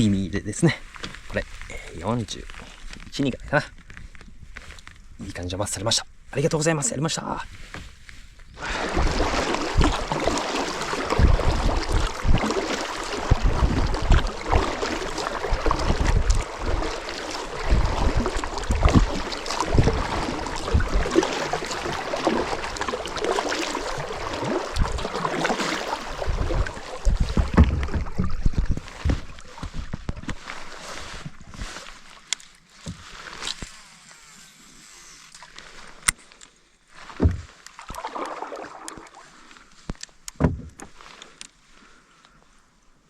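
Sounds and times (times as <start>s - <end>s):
water lapping and sloshing: 7.5s - 43.0s
wind buffeting microphone: 8.5s - 22.9s, 23.9s - 25.3s, 26.0s - 30.2s.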